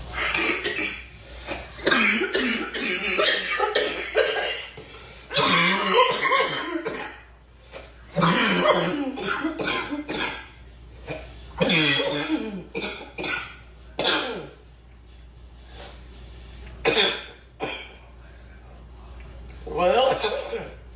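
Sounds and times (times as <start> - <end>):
girl coughing: 0.2 - 7.3, 8.2 - 10.5, 11.1 - 14.6, 16.8 - 18.0, 20.1 - 20.8.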